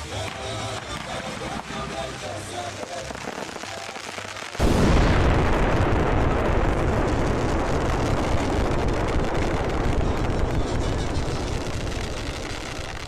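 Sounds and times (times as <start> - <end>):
fireworks barrage: 0.0 - 13.0.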